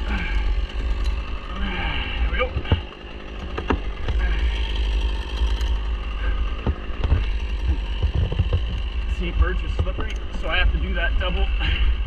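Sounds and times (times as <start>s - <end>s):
engine idling: 0.0s - 12.0s
sharp knocks and clicks: 2.5s - 4.2s, 6.5s - 10.5s.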